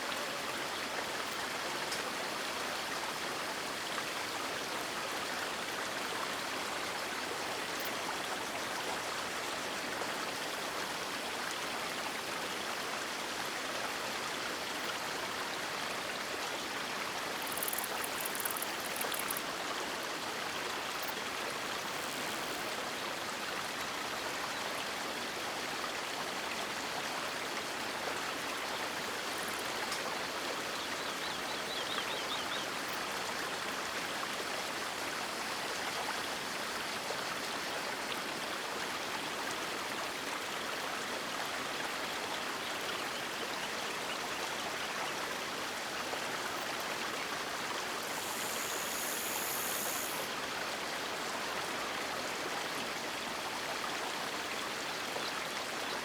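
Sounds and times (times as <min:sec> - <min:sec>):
high-pitched hiss: 0:17.4 - 0:19.4, 0:47.9 - 0:50.4.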